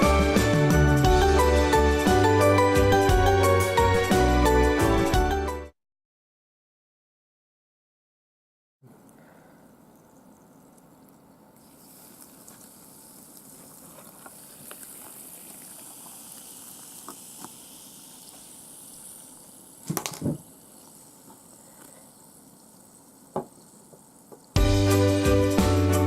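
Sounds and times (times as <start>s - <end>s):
soda fizzing in a glass: 11.6s - 25.5s.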